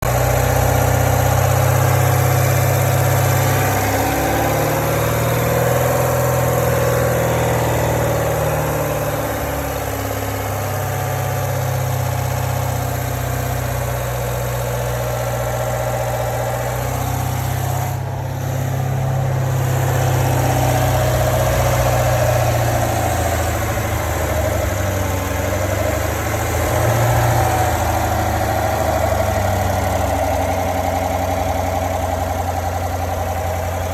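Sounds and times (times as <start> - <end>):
car engine running: 0.0 - 33.9.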